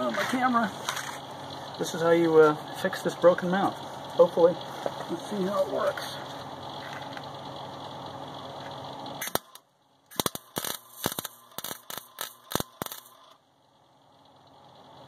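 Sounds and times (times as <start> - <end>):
arc welder crackling: 8.6 - 13.4.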